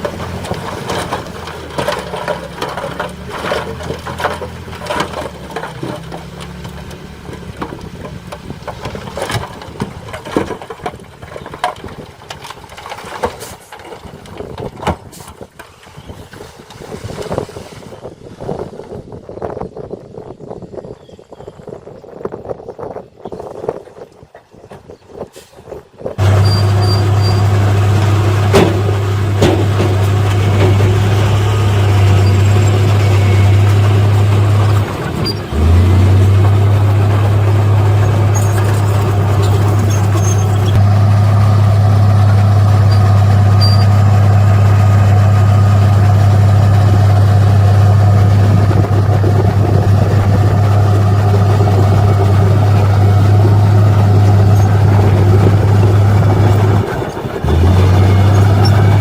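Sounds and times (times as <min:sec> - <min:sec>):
heavy diesel engine droning: 0:00.0 - 0:10.4, 0:26.2 - 0:59.0.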